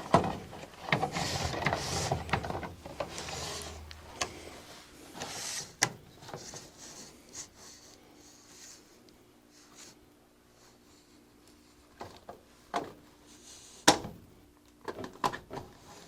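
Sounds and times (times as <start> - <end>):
air filter rustling and scraping: 0.0 - 10.0.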